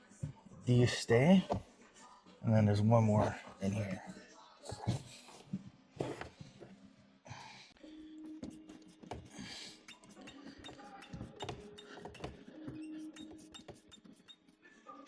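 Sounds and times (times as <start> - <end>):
screwdriver clicks and scrapes: 9.1 - 14.4.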